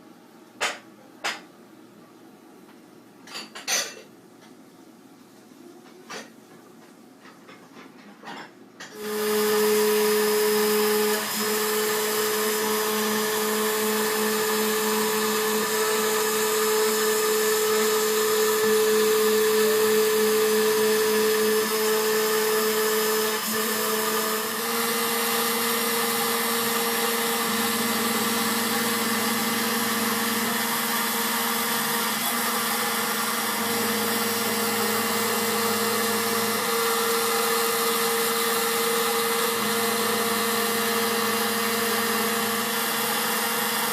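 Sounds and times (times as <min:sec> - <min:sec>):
router spindle whine: 0:08.9 - 0:43.9.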